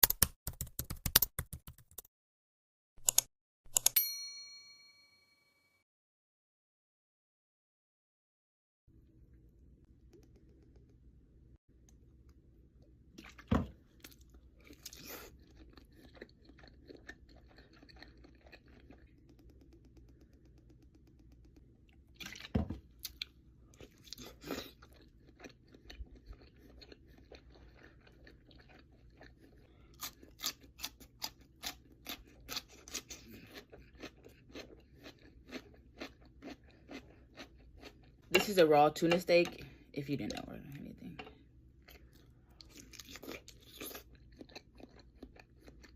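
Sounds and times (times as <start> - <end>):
sharp clicks: 3.0 - 4.0
crunchy wet chewing: 13.2 - 38.3, 41.2 - 45.9.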